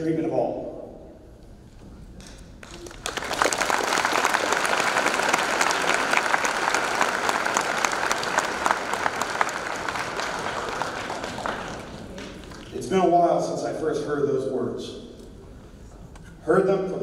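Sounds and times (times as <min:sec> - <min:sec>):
audience applauding: 0:02.6 - 0:12.9.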